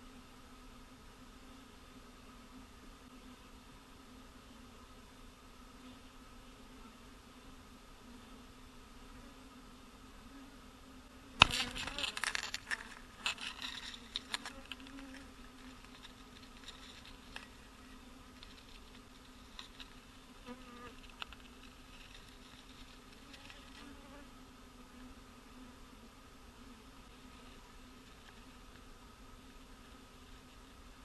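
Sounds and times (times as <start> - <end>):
bees buzzing: 6.6 - 26.0
crackling and rustling: 11.4 - 24.2, 27.2 - 28.9.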